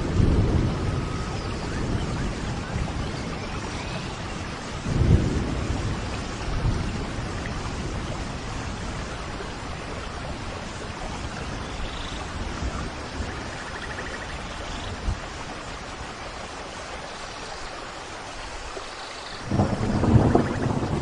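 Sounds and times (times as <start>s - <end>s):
thunder rumbling: 0.0s - 11.6s, 19.4s - 21.0s
steady rain: 0.0s - 21.0s.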